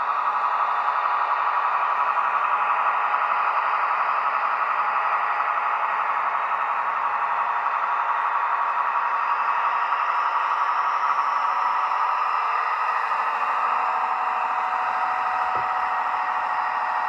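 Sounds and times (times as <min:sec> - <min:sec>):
model train motor and wheels: 0:00.0 - 0:17.0
simulated diesel engine from speaker: 0:00.0 - 0:17.0.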